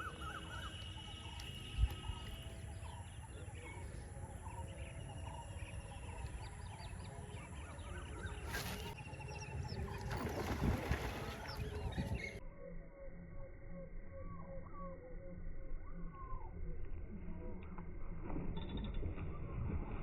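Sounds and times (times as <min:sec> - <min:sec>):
birds chirping: 0:00.0 - 0:12.4
low wind rumble: 0:08.3 - 0:12.5.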